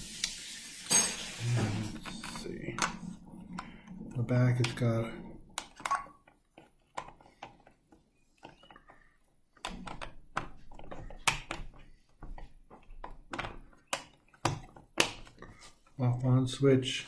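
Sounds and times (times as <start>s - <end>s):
plastic clock clicks and knocks: 4.3s - 8.8s, 9.6s - 15.4s.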